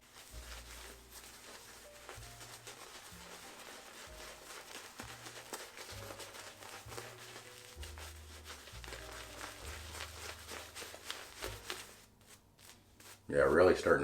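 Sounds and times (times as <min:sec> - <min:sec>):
faint background music: 0:00.0 - 0:14.0
shaving brush scrubbing lather: 0:00.0 - 0:14.0.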